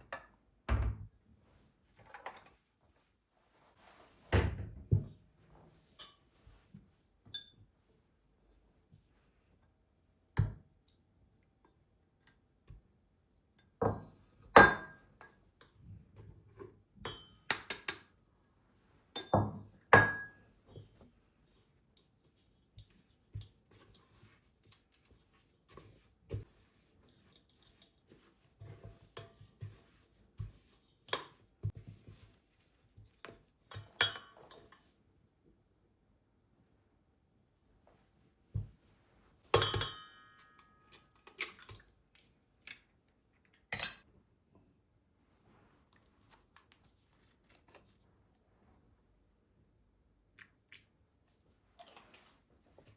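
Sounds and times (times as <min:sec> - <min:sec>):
dishes and utensils clinking: 0:17.1 - 0:18.0, 0:33.7 - 0:34.9, 0:39.5 - 0:41.7.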